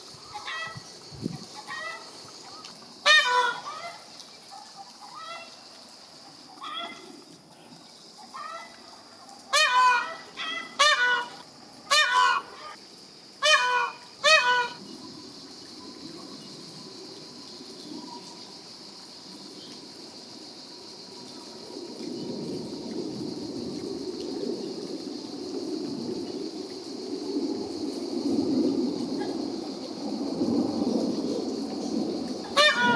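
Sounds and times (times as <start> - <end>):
peacock calling: 0.0 - 5.6, 6.5 - 7.2, 8.2 - 12.8, 13.4 - 14.8, 32.4 - 32.9.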